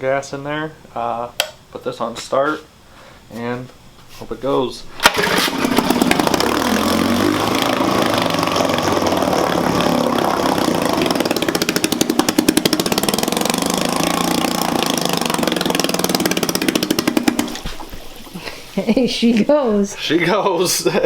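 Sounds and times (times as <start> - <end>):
outboard motor running fast: 5.0 - 18.0.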